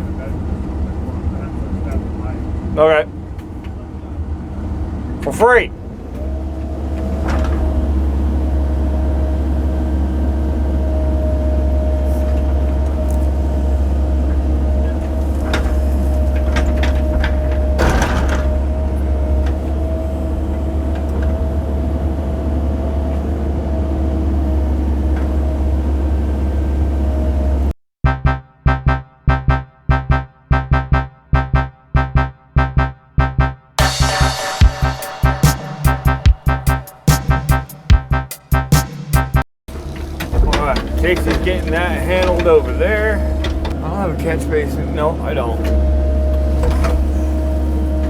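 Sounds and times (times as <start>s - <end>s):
excavator diesel engine: 0.0s - 48.0s
hydraulic whine: 5.8s - 29.4s, 39.7s - 48.0s
electronic keyboard music with beat: 28.0s - 39.4s.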